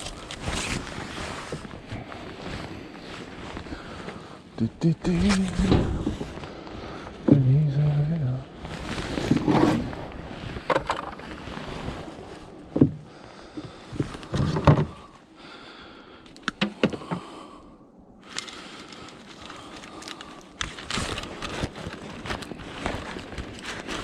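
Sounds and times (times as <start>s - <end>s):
junk being handled and clattering: 10.5s - 11.3s, 12.7s - 15.1s.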